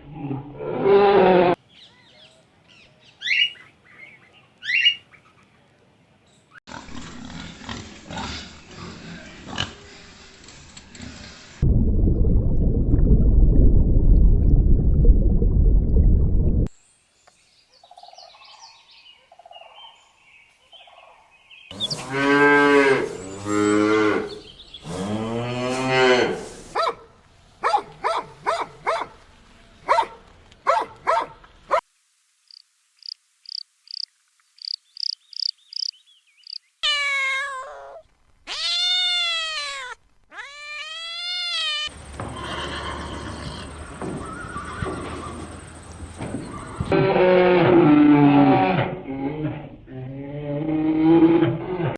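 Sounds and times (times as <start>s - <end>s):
loud low rushing noise: 11.6s - 16.7s
short arching cries: 36.8s - 46.9s
cow mooing: 41.9s - 49.6s.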